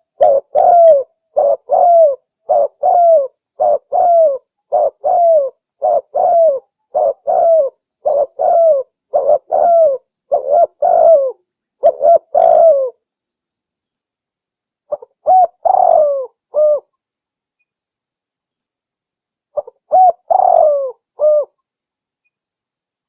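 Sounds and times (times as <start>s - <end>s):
dove cooing: 0.0s - 13.0s, 14.9s - 16.9s, 19.6s - 21.6s.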